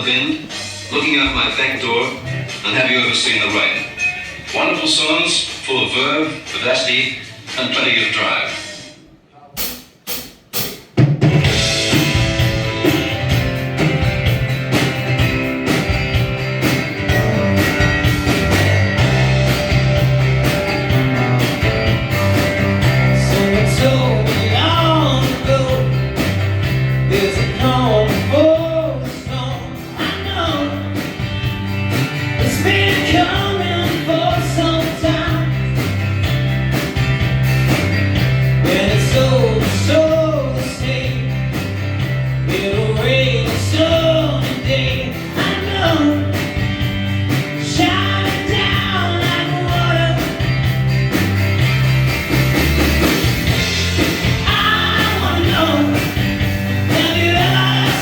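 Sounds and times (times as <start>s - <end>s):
live rock band playing: 0.0s - 7.9s, 9.6s - 58.0s
person singing: 22.8s - 26.3s, 27.0s - 31.1s, 32.4s - 35.8s, 38.6s - 41.6s, 42.4s - 46.6s, 47.6s - 50.6s, 54.0s - 58.0s.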